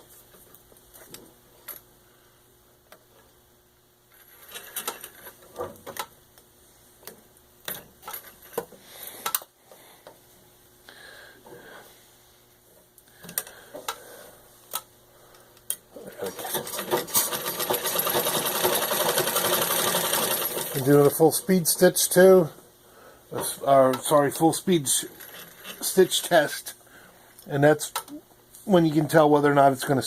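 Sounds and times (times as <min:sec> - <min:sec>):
treadle sewing machine stitching: 0:16.2 - 0:20.9.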